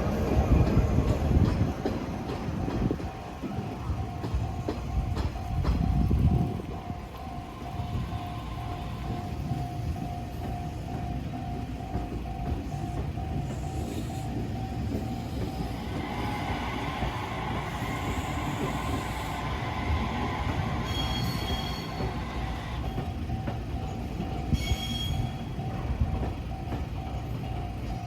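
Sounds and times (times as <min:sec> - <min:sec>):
crossing warning bell: 0:00.0 - 0:28.0
train wheel and rail rumble: 0:00.0 - 0:28.0
high-pitched wheel squeals: 0:20.5 - 0:22.9, 0:24.5 - 0:25.5.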